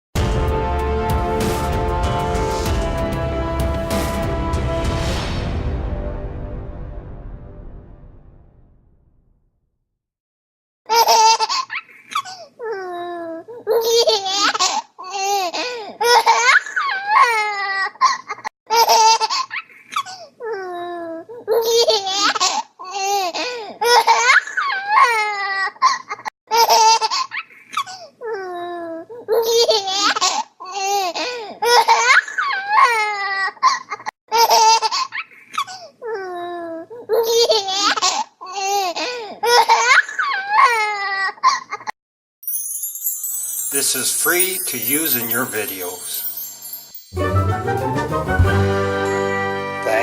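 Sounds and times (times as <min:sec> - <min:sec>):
baby laughing: 0:10.9 - 0:41.9.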